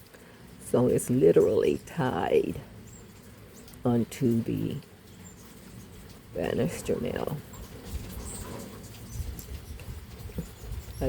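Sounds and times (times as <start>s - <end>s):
hummingbirds chirping: 0.0s - 11.0s.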